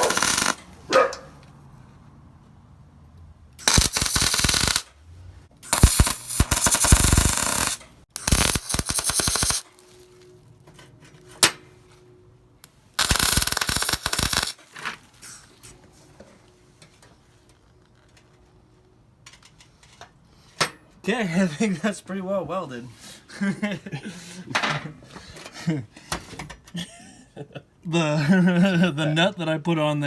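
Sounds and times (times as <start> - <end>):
welding arc crackling: 0.0 - 0.7, 3.6 - 4.9, 5.6 - 10.2, 13.0 - 14.6.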